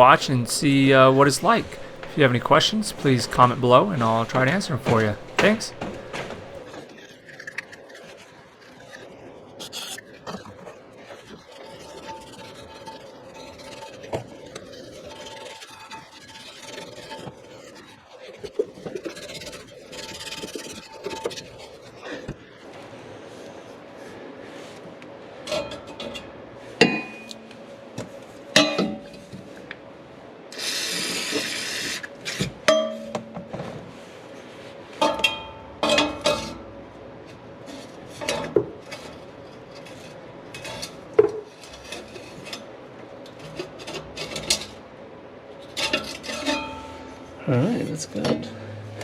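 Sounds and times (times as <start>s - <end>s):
harsh rasping noise: 0.0s - 6.6s.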